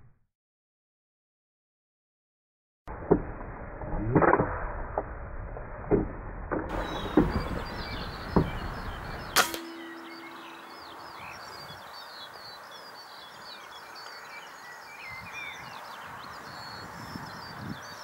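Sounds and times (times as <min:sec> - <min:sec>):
dull knocks: 0:06.7 - 0:09.5
birds chirping: 0:06.7 - 0:18.0
air rifle shot: 0:07.1 - 0:09.9.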